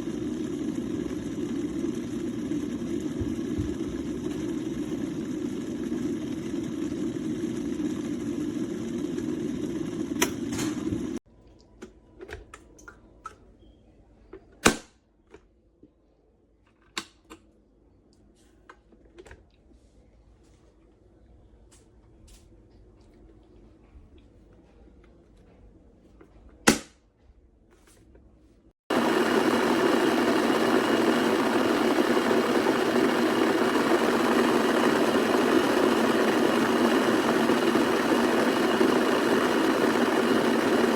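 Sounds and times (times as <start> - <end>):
electric kettle heating water: 0.0 - 11.2, 28.9 - 40.9.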